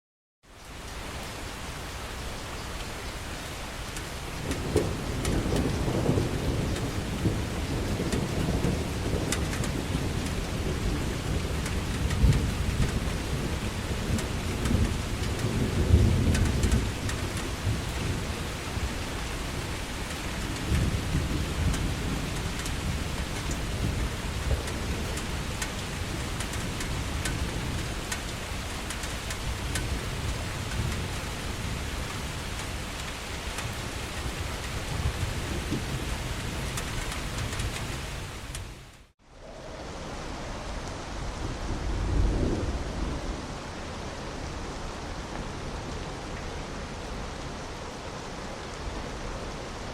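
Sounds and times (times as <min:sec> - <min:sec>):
heavy rain falling: 0:00.4 - 0:49.9
sharp raindrop hits: 0:03.8 - 0:39.2.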